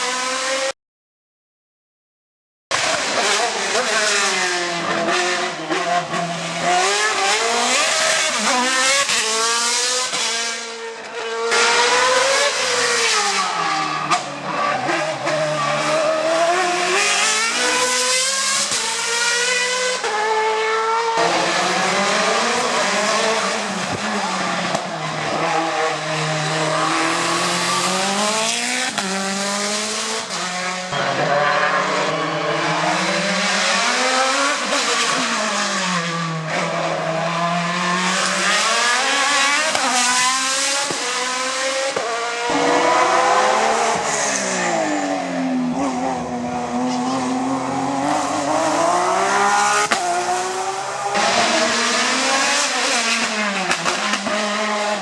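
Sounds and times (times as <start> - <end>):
race car engines revving: 0.0 - 0.7, 2.7 - 55.0.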